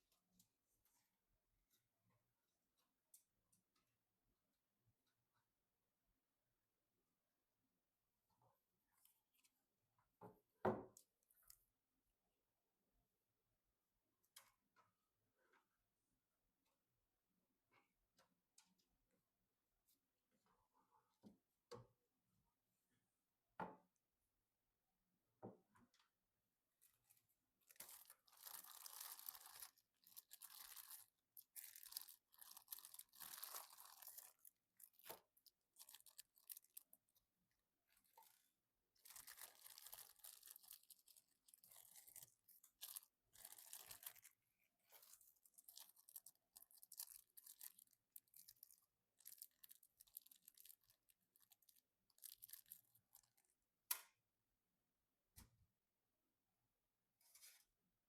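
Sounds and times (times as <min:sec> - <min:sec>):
rustling and tearing packaging: 0:27.6 - 0:37.0, 0:39.0 - 0:53.4.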